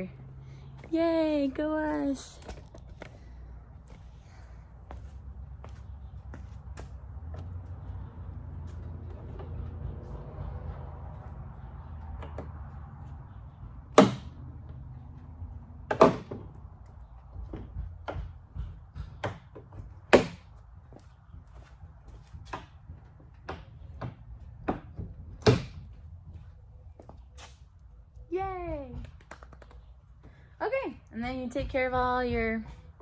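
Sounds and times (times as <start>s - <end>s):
sharp knocks and clunks: 13.9s - 14.8s, 15.8s - 20.6s, 22.4s - 26.0s.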